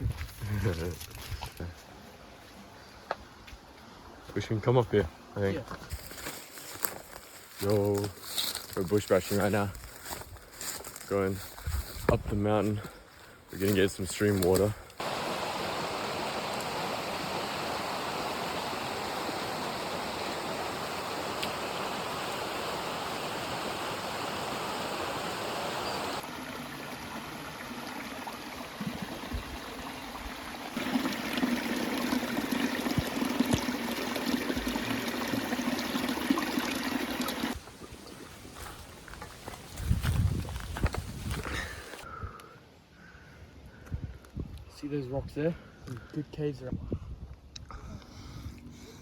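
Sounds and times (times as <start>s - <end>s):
stream water rushing: 14.5s - 37.6s.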